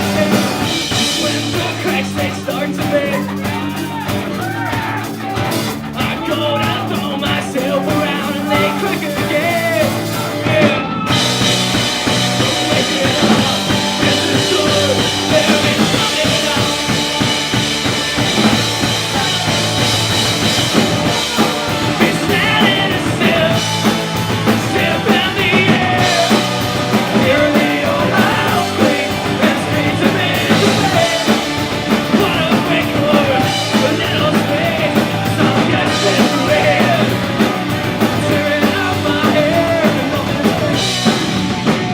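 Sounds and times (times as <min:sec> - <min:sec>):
person singing: 0:00.0 - 0:41.4
drum kit beat: 0:00.0 - 0:41.9
punk rock band playing: 0:00.0 - 0:41.9.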